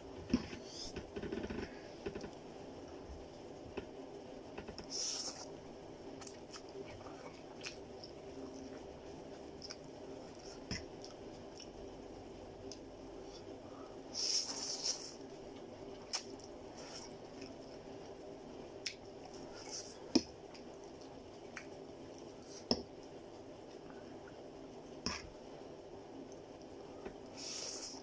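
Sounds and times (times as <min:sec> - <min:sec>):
steady low hum: 0:00.0 - 0:28.0
wet chewing: 0:06.2 - 0:08.6.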